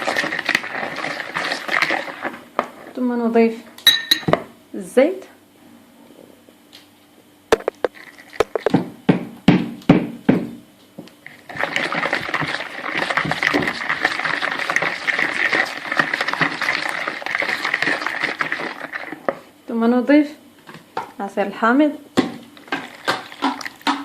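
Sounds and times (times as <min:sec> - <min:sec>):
batter stirred briskly: 0:00.0 - 0:03.0, 0:11.2 - 0:19.5, 0:22.6 - 0:24.0
glass clinking on mixing bowl: 0:03.9 - 0:04.4.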